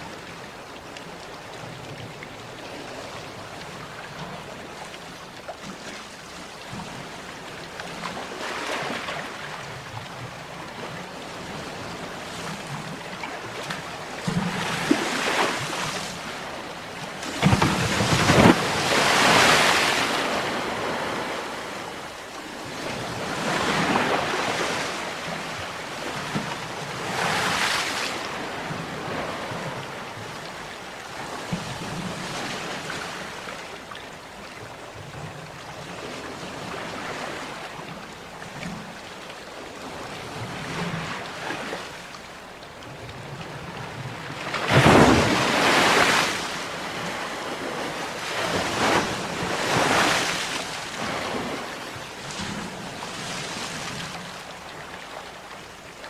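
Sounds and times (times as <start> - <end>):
surf wash: 10.6 - 33.8, 43.3 - 56.0
sea waves washing in: 11.3 - 30.2, 43.6 - 55.0.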